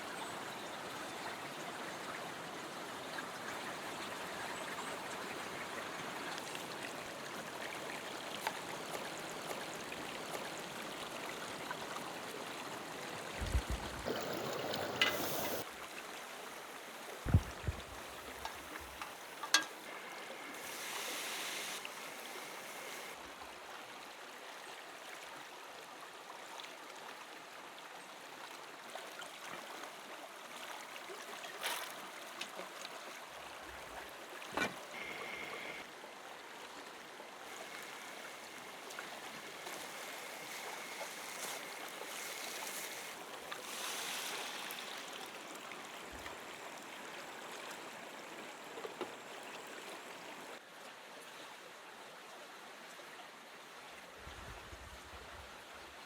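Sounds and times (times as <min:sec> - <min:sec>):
river water flowing: 0:00.8 - 0:27.6, 0:28.3 - 0:51.3
sharp cookware clicks: 0:18.4 - 0:19.8.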